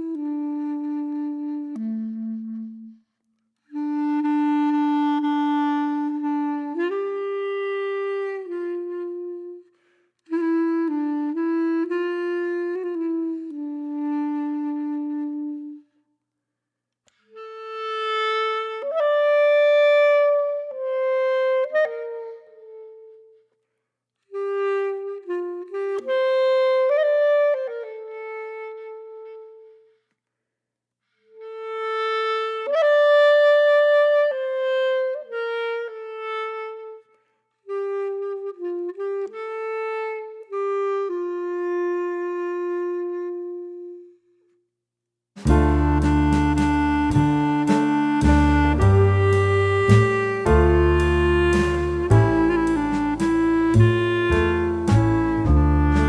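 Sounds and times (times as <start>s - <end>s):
solo wind instrument melody: 0.0s - 3.0s, 3.7s - 9.7s, 10.3s - 15.8s, 24.4s - 29.8s, 37.7s - 44.2s, 45.4s - 56.0s.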